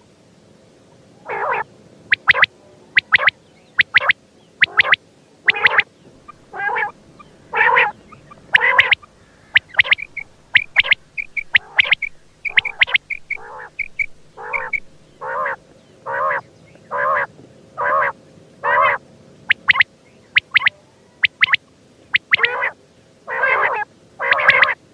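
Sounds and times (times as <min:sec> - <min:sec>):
quail calling: 0:01.2 - 0:24.8.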